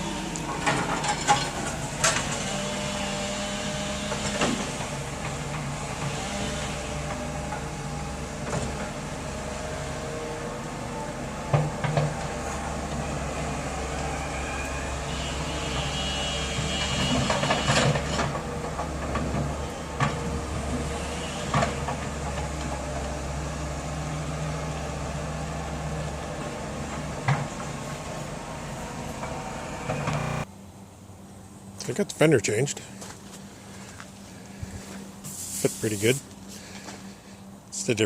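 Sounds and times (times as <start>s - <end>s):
low mechanical hum: 0.0s - 31.9s
brief high squeal: 14.0s - 17.8s.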